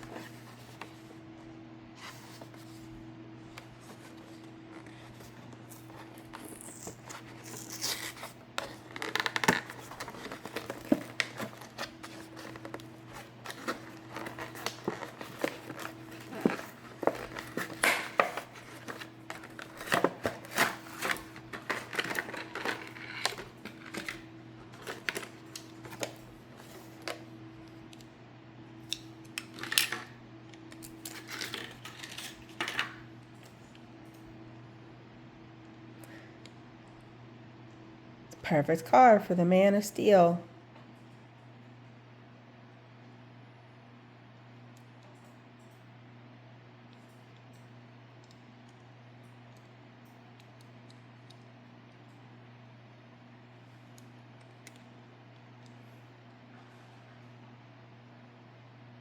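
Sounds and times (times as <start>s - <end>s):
steady low hum: 0.0s - 59.0s
plastic packaging crinkling: 3.7s - 27.2s.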